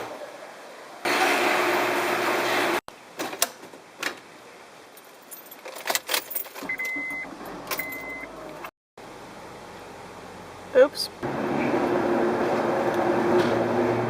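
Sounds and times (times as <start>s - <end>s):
keys jangling: 5.0s - 6.7s.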